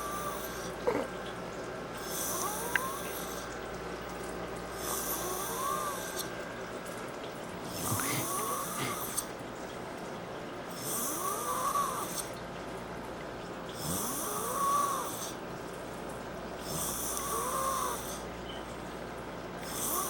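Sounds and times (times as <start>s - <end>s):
woman snoring with whistling tone: 2.1s - 3.2s, 4.9s - 6.3s, 10.8s - 12.3s, 13.8s - 15.4s, 16.6s - 18.2s, 19.7s - 20.0s.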